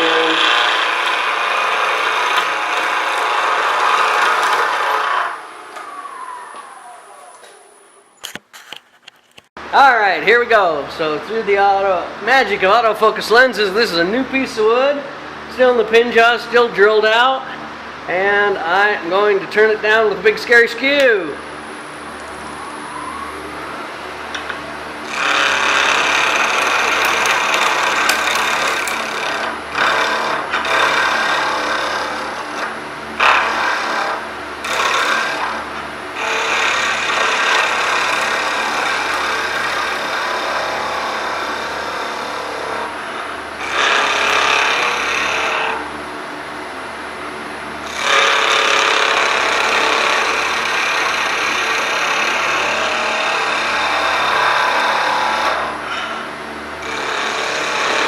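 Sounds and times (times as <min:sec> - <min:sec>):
chisel scraping wood on lathe: 0:00.0 - 0:05.4, 0:25.1 - 0:35.6, 0:36.2 - 0:42.9, 0:43.6 - 0:45.8, 0:47.9 - 0:56.2, 0:56.8 - 0:58.0
lathe motor humming: 0:00.0 - 0:06.4, 0:25.0 - 0:45.9, 0:47.8 - 0:56.1, 0:56.8 - 0:58.0.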